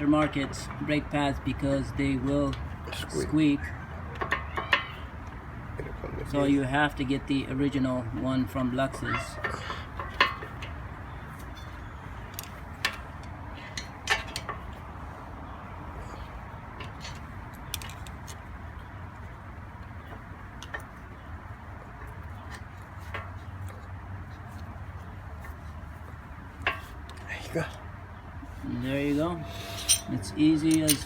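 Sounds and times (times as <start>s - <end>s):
steady background noise: 0.0s - 31.0s
metallic clicks of tools: 29.7s - 31.0s.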